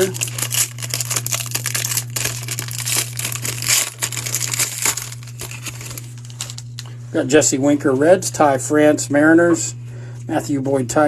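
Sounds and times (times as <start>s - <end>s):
plastic wrapper tearing and crinkling: 0.0s - 6.9s.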